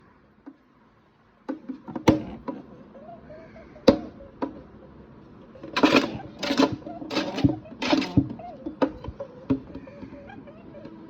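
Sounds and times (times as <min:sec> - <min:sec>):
rabbit knocking and thumping: 0:01.5 - 0:02.6.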